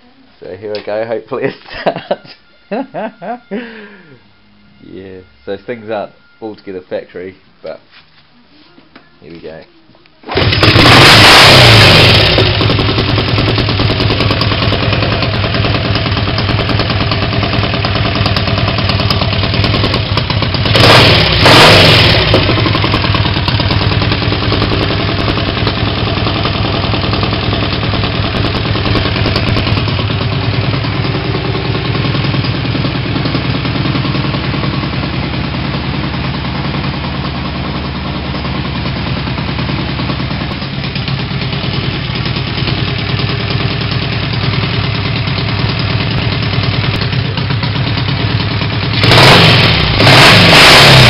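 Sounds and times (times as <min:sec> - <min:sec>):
exhaust noise: 0:10.3 - 0:51.0
scooter engine revving and idling: 0:10.3 - 0:51.0.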